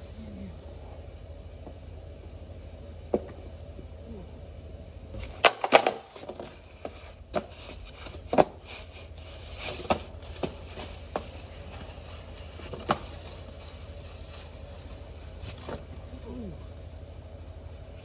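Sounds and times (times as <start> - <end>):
skateboard knocking and clacking: 5.2 - 8.7.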